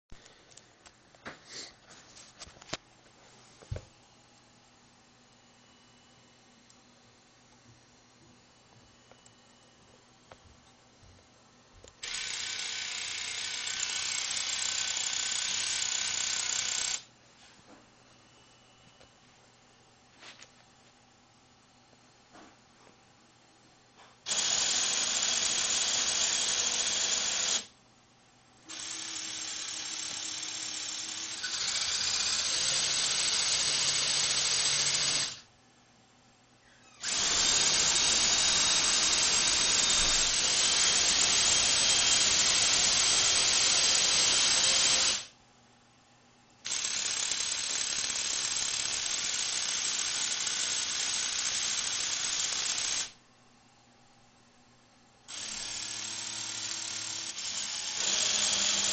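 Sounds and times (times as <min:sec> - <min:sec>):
electric motors whirring: 0:28.7 - 0:35.5, 0:37.0 - 0:45.3, 0:55.3 - 0:58.9.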